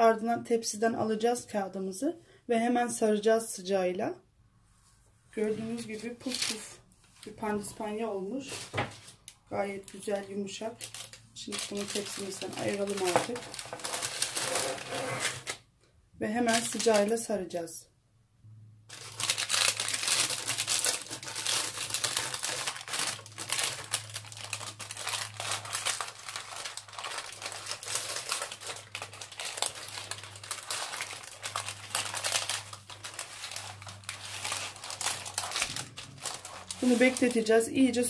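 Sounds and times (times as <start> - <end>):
baking paper crinkling: 5.4 - 15.6, 16.4 - 17.3, 18.9 - 38.0.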